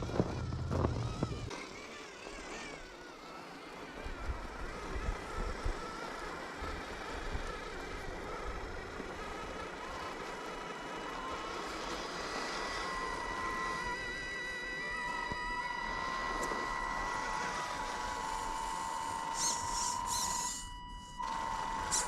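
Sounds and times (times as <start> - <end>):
low rumbling: 0.0 - 1.5
electric motor and gearbox whine: 0.0 - 22.0.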